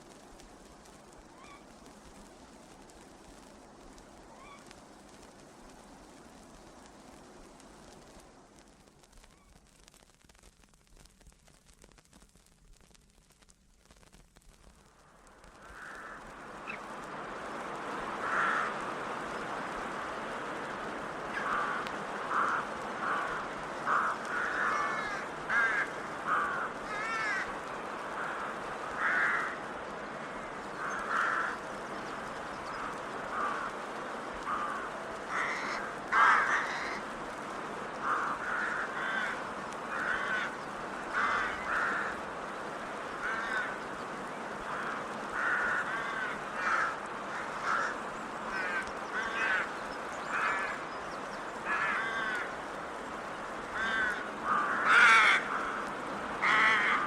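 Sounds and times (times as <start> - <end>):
steady hiss: 0.0 - 57.0
crows cawing: 15.6 - 16.8, 18.1 - 19.2, 21.2 - 37.2, 38.0 - 42.3, 43.1 - 44.0, 44.6 - 52.6, 53.6 - 57.0.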